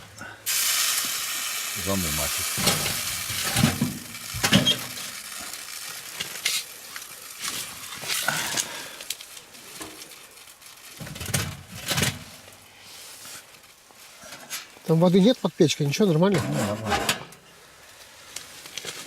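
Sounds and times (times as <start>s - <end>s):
meat sizzling in a pot: 0.0s - 15.0s.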